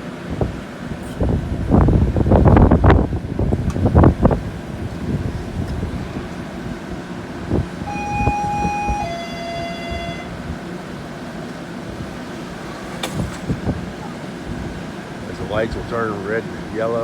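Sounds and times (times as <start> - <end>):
train rumbling at platform: 0.0 - 17.0
wind on microphone: 0.2 - 16.7
two-note electronic chime: 7.9 - 10.4.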